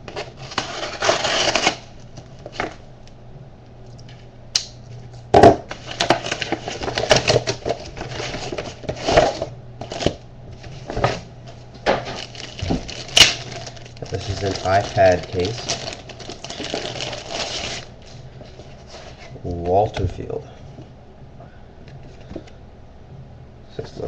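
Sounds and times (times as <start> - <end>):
packaging rustling: 0.0 - 2.8, 5.7 - 19.6
packaging crackle: 0.1 - 2.8, 5.7 - 10.2, 11.8 - 19.3.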